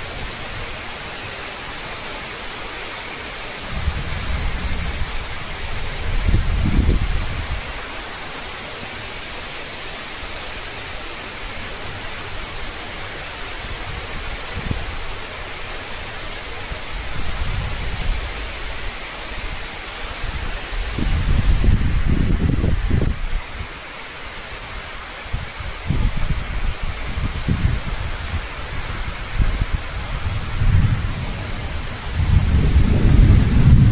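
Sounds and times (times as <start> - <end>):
heavy rain falling: 0.0 - 33.9
low rumbling: 30.2 - 33.9.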